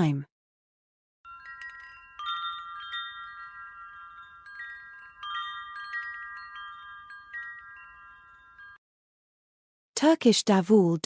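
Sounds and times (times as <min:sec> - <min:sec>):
metal chimes ringing: 0:01.3 - 0:08.8.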